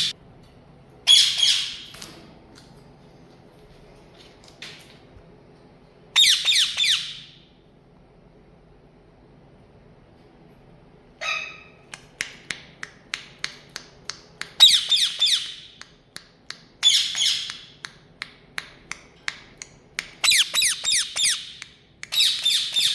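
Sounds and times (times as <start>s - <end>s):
parrot squawking: 1.1s - 1.9s, 6.2s - 7.3s, 11.2s - 11.8s, 14.6s - 15.7s, 16.8s - 17.7s, 20.2s - 22.9s.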